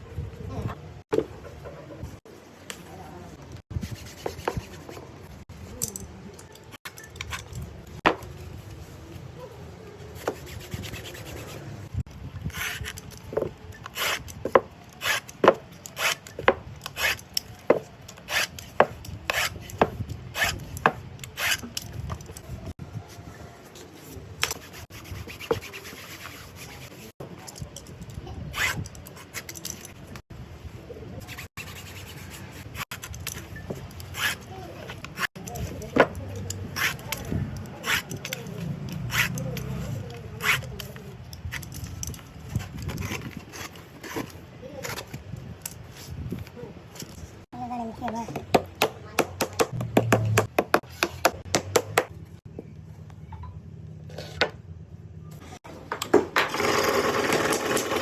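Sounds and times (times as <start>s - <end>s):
small parts rubbing and scraping: 3.8s - 9.3s, 10.0s - 30.2s, 31.2s - 47.5s, 55.3s - 58.0s.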